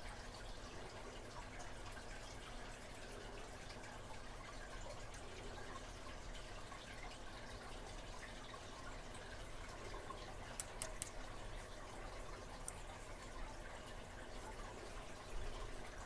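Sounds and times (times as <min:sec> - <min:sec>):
small clicks of lock parts: 0:10.5 - 0:11.2
sharp ticks: 0:10.6 - 0:11.2.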